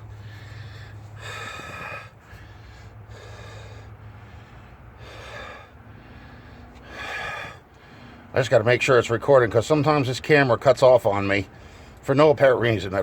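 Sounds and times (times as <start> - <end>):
man breathing heavily: 0.0 - 8.4, 11.5 - 12.0.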